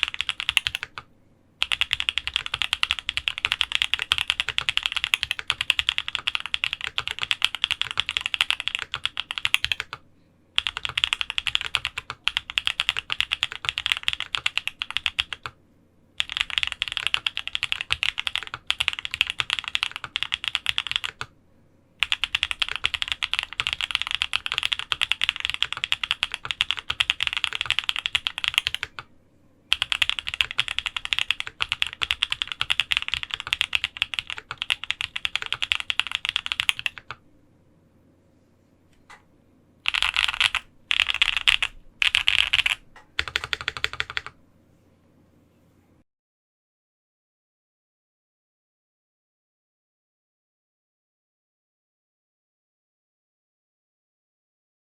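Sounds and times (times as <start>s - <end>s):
mechanical keyboard typing: 0.0s - 10.0s, 10.6s - 15.6s, 16.2s - 21.3s, 22.0s - 29.1s, 29.7s - 37.2s, 39.8s - 44.4s.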